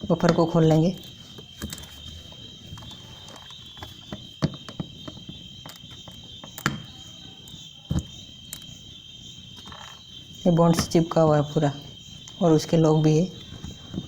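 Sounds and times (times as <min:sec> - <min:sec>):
tools knocking and clicking: 0:00.0 - 0:08.8
crickets chirring: 0:00.0 - 0:14.0.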